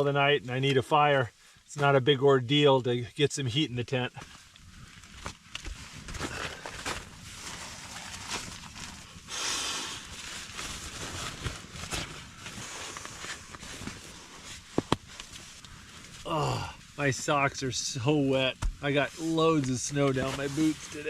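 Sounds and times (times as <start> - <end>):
rustling: 4.2 - 17.2, 18.4 - 21.0.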